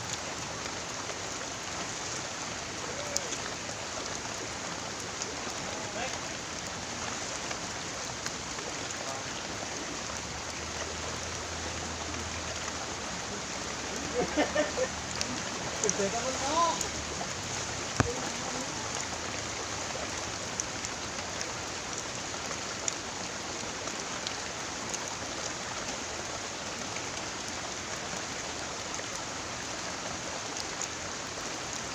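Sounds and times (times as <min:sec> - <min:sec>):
hiss of water: 0:00.0 - 0:07.9
faint voices: 0:02.8 - 0:03.6.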